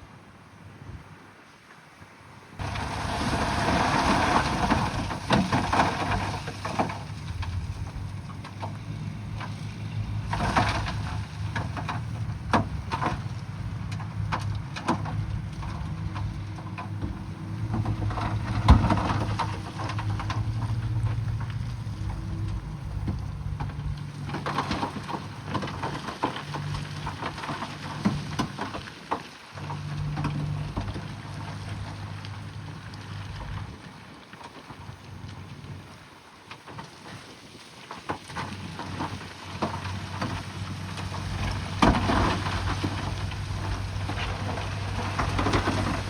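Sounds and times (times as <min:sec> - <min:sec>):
knocks and clanks: 0:02.6 - 0:28.8
scraping against rock: 0:02.6 - 0:33.8, 0:37.9 - 0:46.0
bulldozer diesel engine: 0:02.6 - 0:34.0, 0:38.3 - 0:46.0.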